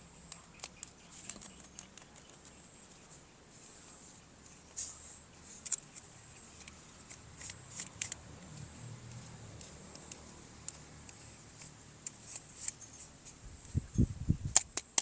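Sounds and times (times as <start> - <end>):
plastic parts clicking and tapping: 0.2 - 3.0, 5.5 - 13.4, 14.4 - 15.0.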